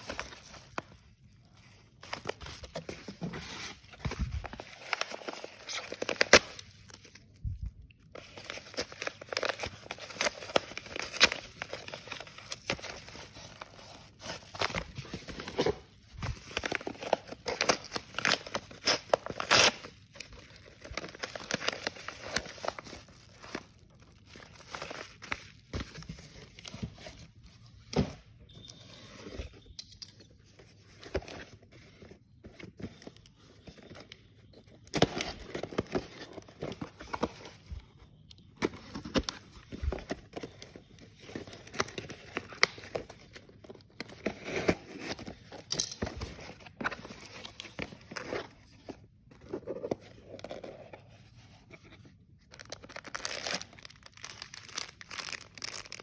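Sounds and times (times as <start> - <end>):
packaging crinkling and tearing: 0.0 - 27.1, 52.0 - 56.0.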